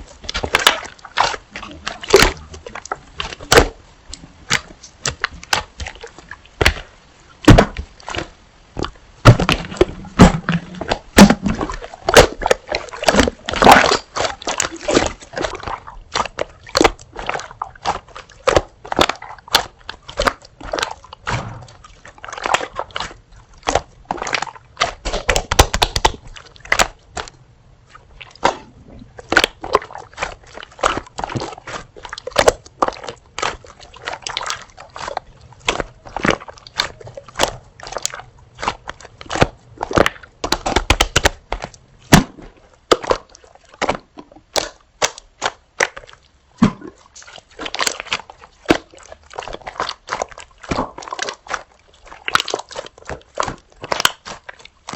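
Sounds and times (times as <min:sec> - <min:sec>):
slime crackling and popping: 0:00.0 - 0:54.9.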